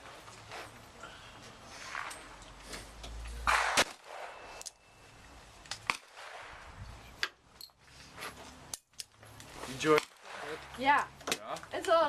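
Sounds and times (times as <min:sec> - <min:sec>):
loud gunshot: 0:03.4 - 0:04.6, 0:05.9 - 0:06.7, 0:10.0 - 0:10.6
faint gunshot cracks: 0:03.5 - 0:04.6.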